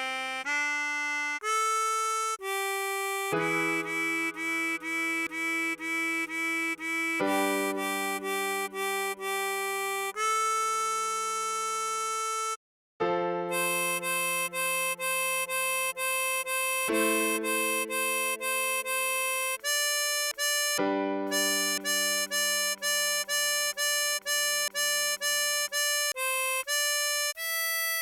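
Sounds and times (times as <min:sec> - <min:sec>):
tremolo harmonica melody: 0:00.0 - 0:12.6, 0:13.5 - 0:28.0.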